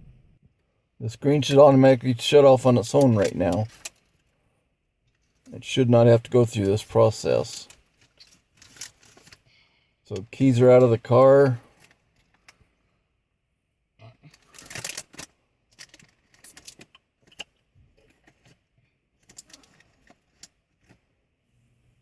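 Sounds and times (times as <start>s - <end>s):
car keys jangling: 7.5s - 9.4s, 14.4s - 18.6s, 19.2s - 21.0s.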